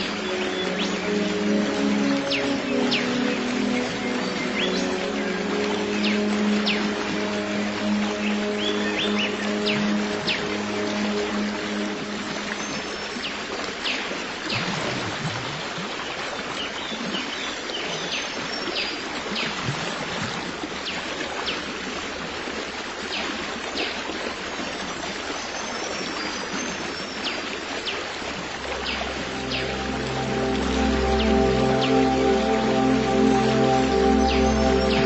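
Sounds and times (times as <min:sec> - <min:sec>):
birds chirping: 0:00.0 - 0:13.4, 0:28.6 - 0:35.0
stream water rushing: 0:00.0 - 0:35.0.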